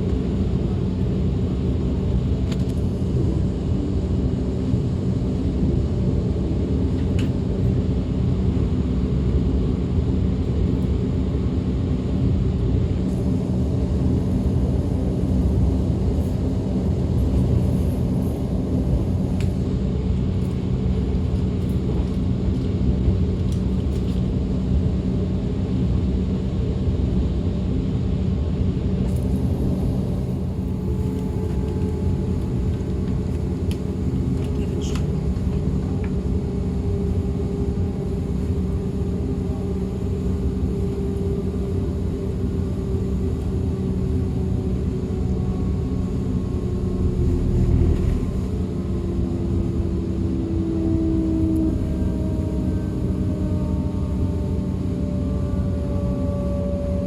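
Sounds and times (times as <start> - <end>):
train wheels rumbling on track: 28.9 - 54.8
traction motor whine: 29.2 - 57.0.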